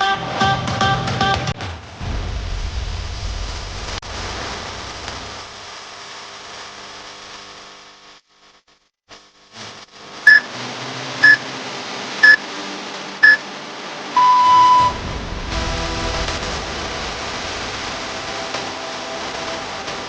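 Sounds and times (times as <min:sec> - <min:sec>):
longer lower timer beep: 0:10.3 - 0:10.5, 0:14.2 - 0:15.0
short high timer beeps: 0:10.3 - 0:10.5, 0:14.2 - 0:15.0.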